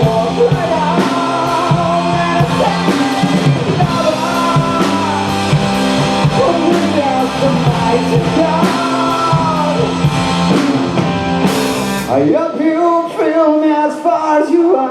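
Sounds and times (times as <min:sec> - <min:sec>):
person singing: 0:00.0 - 0:10.3
drum kit with cymbal and snare: 0:00.0 - 0:12.4
guitar: 0:00.0 - 0:14.9.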